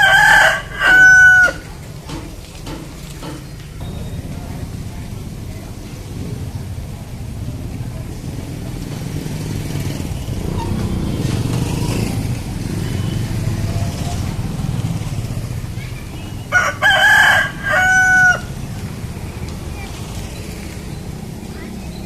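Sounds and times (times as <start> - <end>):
rooster crowing: 0.0 - 1.8, 16.5 - 18.6.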